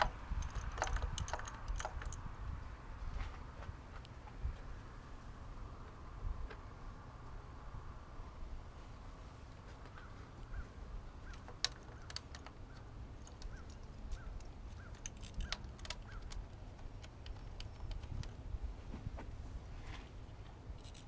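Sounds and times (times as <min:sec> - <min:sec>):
plastic and metal parts clicking: 0:00.0 - 0:02.2, 0:11.4 - 0:13.8, 0:14.8 - 0:18.4.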